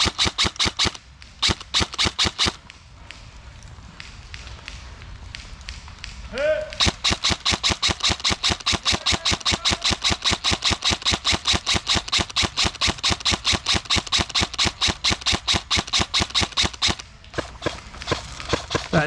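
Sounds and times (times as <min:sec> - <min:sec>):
airsoft gun firing full auto: 0:00.0 - 0:02.6, 0:06.8 - 0:19.0.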